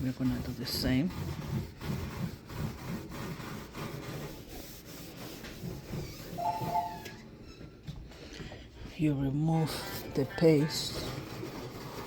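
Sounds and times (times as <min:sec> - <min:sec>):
wet cloth rubbing steel: 0:00.0 - 0:07.2.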